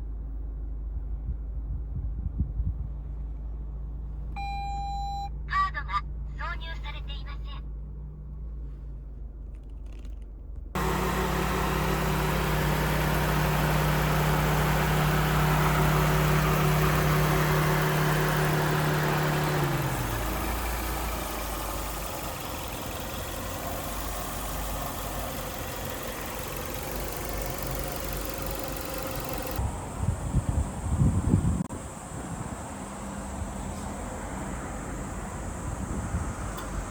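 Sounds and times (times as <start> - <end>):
car engine idling: 7.6 - 36.9.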